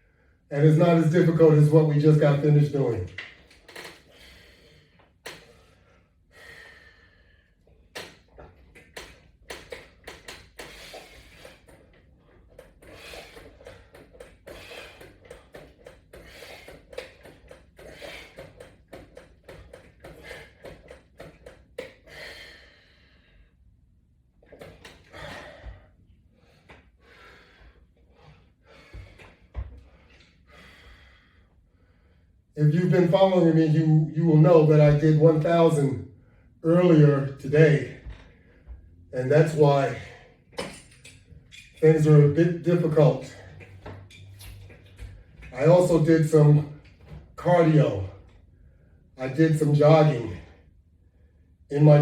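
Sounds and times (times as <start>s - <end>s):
exercise gear clicking and knocking: 3.1s - 4.3s, 7.9s - 22.2s, 24.4s - 25.8s, 40.5s - 41.8s.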